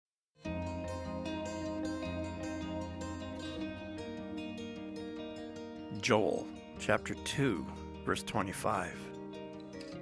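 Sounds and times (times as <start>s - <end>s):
soft plucked string music: 0.5s - 6.8s.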